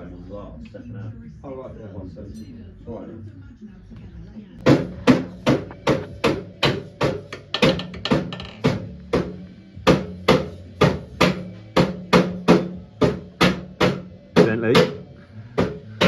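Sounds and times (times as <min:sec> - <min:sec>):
music with fast drum beat: 0:04.6 - 0:16.0.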